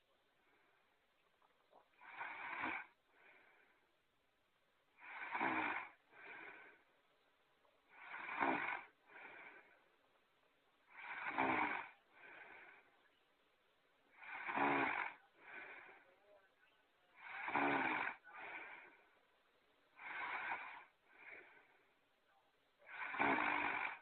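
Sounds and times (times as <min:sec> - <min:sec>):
cartoon snoring: 0:02.0 - 0:03.4, 0:05.0 - 0:06.7, 0:07.9 - 0:09.6, 0:10.9 - 0:12.8, 0:14.1 - 0:16.0, 0:17.2 - 0:19.0, 0:20.0 - 0:21.6, 0:22.8 - 0:24.0.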